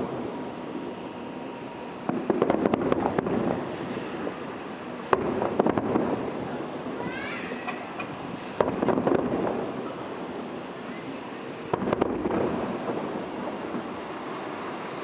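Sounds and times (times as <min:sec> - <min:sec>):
background rumble: 0:01.8 - 0:15.0
fireworks crackling pops: 0:02.0 - 0:15.0.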